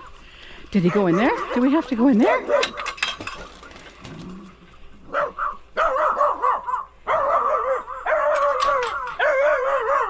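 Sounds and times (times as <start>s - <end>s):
dog whining and yipping: 5.1s - 10.0s.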